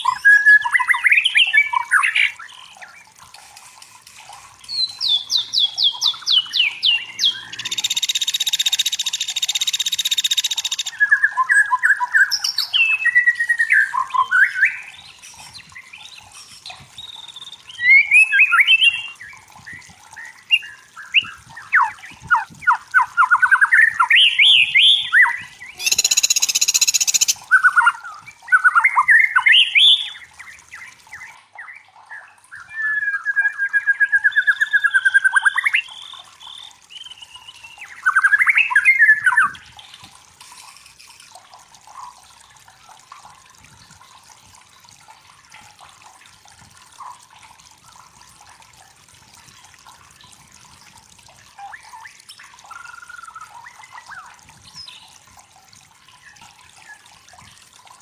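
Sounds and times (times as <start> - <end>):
bird singing whistled phrases: 4.8 - 14.9, 23.1 - 30.2, 32.6 - 39.6.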